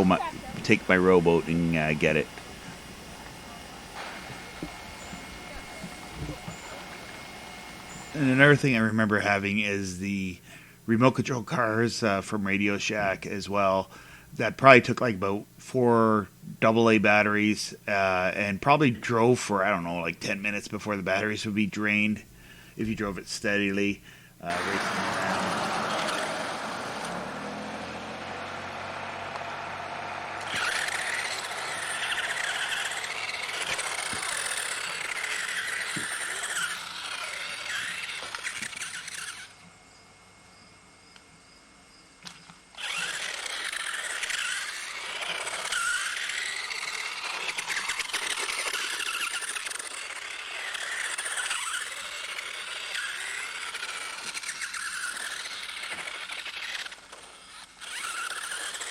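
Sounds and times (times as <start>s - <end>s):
small electric motor whine: 0.0s - 9.4s, 21.9s - 58.9s.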